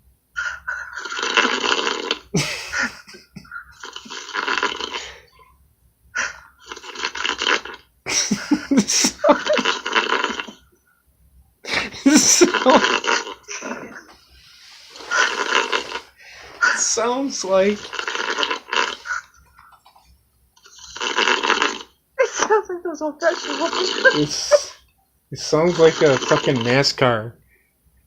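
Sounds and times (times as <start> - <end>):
man snoring heavily: 0.7 - 3.2, 3.8 - 5.3, 11.7 - 14.0, 14.9 - 19.3, 20.6 - 21.9, 25.5 - 26.7.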